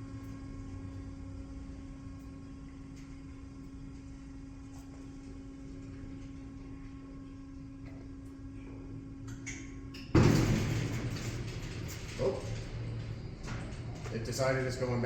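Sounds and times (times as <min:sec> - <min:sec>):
lift machinery humming: 0:10.0 - 0:15.0.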